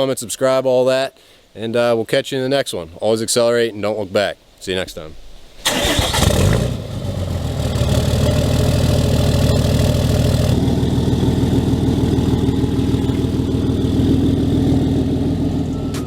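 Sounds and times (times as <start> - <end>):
diesel engine idling: 5.7 - 16.0.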